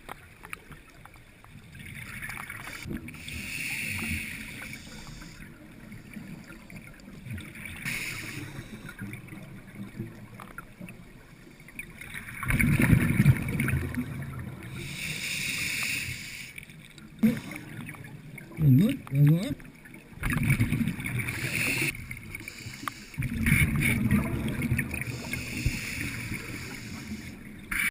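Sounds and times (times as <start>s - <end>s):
diver breathing through regulator: 3.2s - 5.5s, 7.8s - 9.1s, 14.7s - 16.6s, 21.2s - 23.2s, 25.0s - 27.4s
gurgle of exhaled bubbles: 12.0s - 14.8s, 20.2s - 22.0s, 23.2s - 26.7s.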